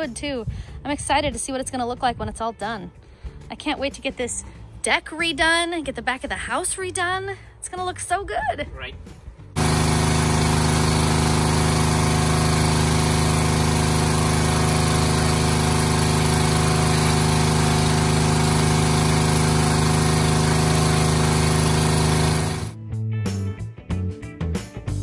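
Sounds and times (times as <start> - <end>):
small gas engine running: 9.6 - 22.8.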